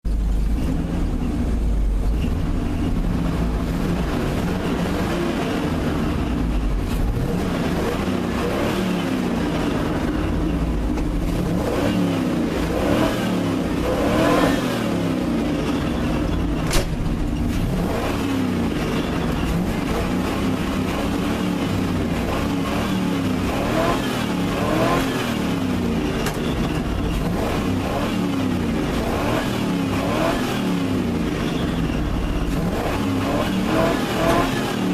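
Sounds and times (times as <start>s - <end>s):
pickup truck engine revving: 0.2s - 34.9s
sharp click: 16.6s - 17.0s.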